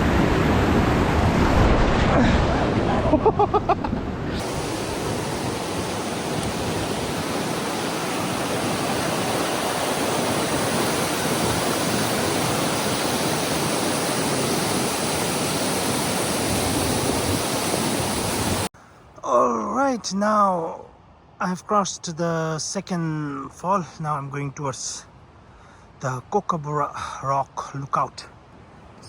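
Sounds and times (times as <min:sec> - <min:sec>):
waterfall and creek rushing: 0:04.3 - 0:18.7.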